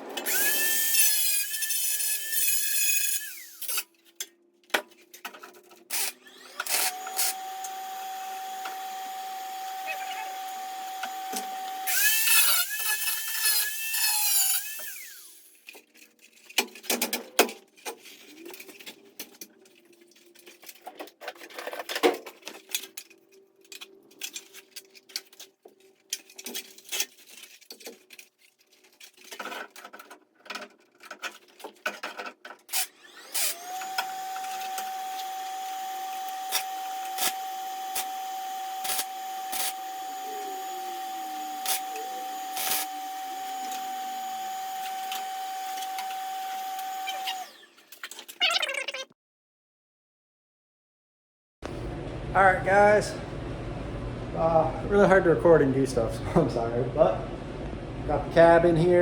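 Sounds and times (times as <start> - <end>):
power tool whining: 0.0 - 3.8, 5.9 - 15.6, 32.7 - 48.1
knocks clicks and scraping: 15.6 - 32.9.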